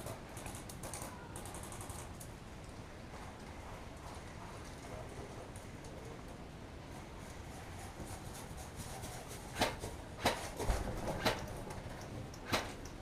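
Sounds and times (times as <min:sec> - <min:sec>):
low background noise: 0:00.0 - 0:13.0.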